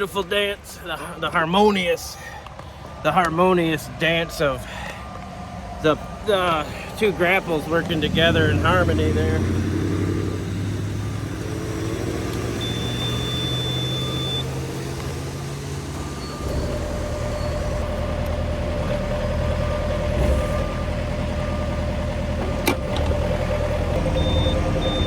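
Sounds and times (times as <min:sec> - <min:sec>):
diesel engine running: 0:00.0 - 0:25.0
steady machine whine: 0:14.7 - 0:25.0.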